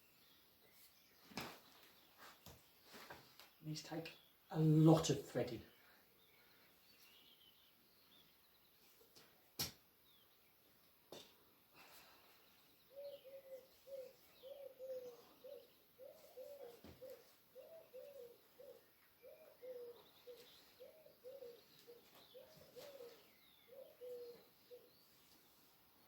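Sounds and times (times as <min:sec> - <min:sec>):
faint high bird chirps: 0:11.9 - 0:25.6
dove cooing: 0:12.9 - 0:25.0.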